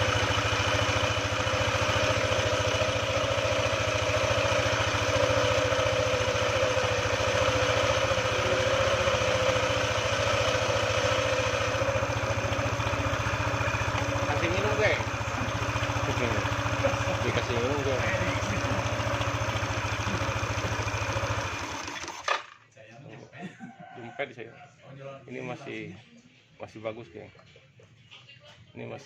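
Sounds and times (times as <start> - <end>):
scooter engine idling: 0.0 - 22.6.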